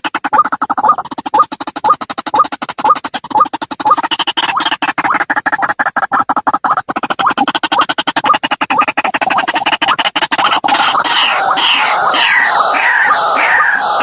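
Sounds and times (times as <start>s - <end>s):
waterhen croaking call: 7.8s - 14.0s.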